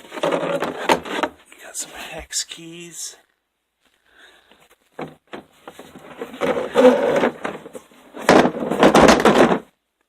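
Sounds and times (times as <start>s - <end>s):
tools scraping and rattling in drawer: 5.6s - 9.6s.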